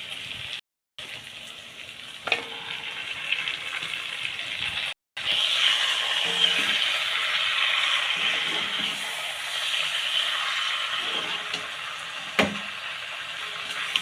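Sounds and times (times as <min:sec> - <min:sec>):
chicken sizzling in oil: 0:00.0 - 0:14.0.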